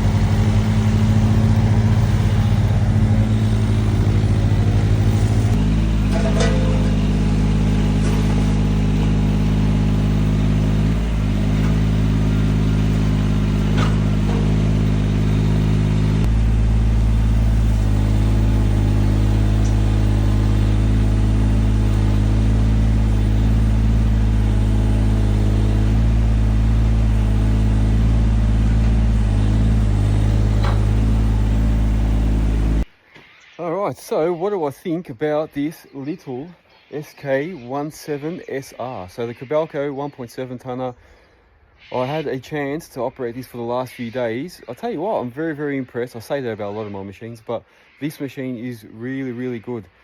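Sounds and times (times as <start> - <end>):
excavator diesel engine running: 0.0 - 32.9.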